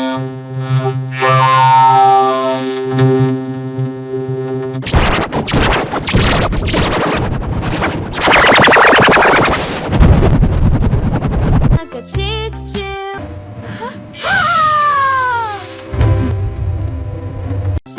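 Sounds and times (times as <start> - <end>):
buzzy distorted tone: 4.8 - 11.8
harsh crackling noise: 4.8 - 11.9.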